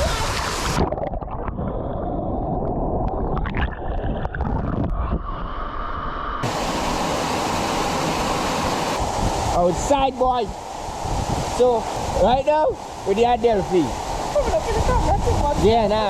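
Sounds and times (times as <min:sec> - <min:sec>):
waterfall rushing: 0:06.4 - 0:16.0.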